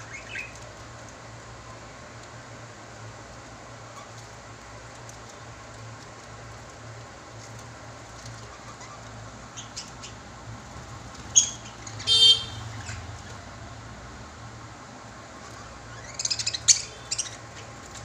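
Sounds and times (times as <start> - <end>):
bird chirping: 0.0 - 0.6, 8.4 - 10.2, 11.1 - 13.4, 15.4 - 18.0.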